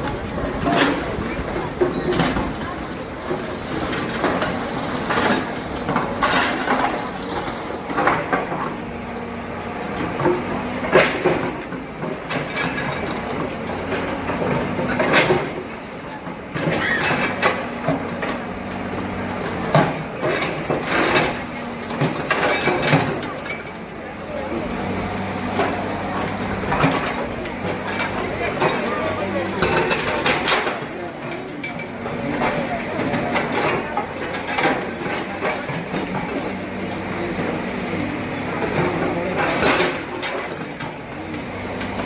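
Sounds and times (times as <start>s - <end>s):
people talking: 0.0s - 42.0s
steady engine-like hum: 0.0s - 42.0s.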